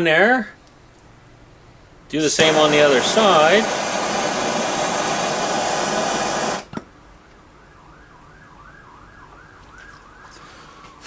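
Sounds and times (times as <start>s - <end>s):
gas torch hissing: 2.1s - 6.8s
torch shut-off click: 2.2s - 6.9s.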